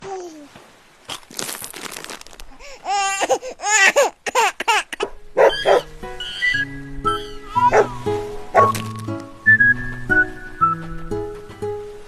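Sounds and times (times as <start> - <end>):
crinkling rustle: 0.0 - 6.0, 7.6 - 11.6
short high cries: 5.4 - 8.7.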